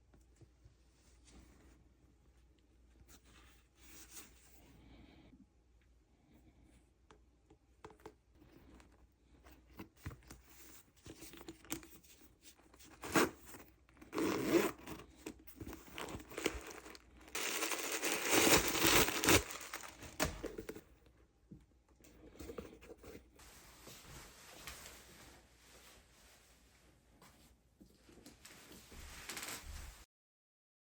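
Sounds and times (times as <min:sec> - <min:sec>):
packaging rustling and crinkling: 0:12.9 - 0:20.9, 0:28.7 - 0:30.0
packaging tearing and crumpling: 0:15.7 - 0:20.6.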